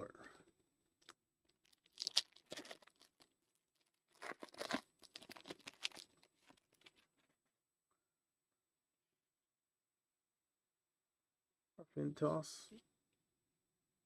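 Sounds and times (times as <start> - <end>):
foil wrapper tearing and crinkling: 1.6 - 3.3, 4.1 - 7.0.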